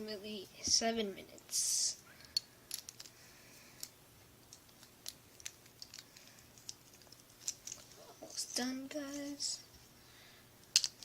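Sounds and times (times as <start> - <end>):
plastic and metal parts clicking: 4.5 - 8.0.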